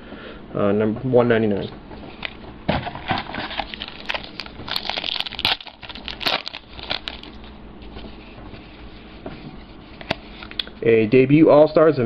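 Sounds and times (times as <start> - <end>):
foil wrapper crinkling: 3.0 - 7.6.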